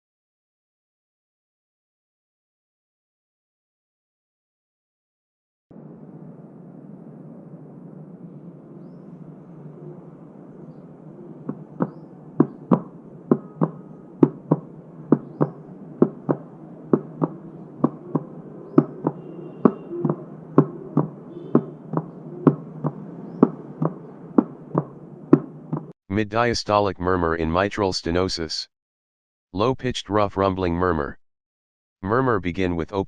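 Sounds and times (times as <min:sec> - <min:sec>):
steady low hiss: 0:05.8 - 0:18.8.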